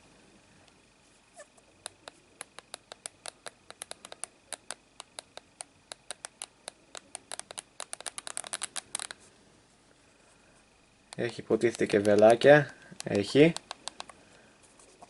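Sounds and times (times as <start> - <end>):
keyboard key clicks: 2.4 - 9.1, 11.2 - 14.2.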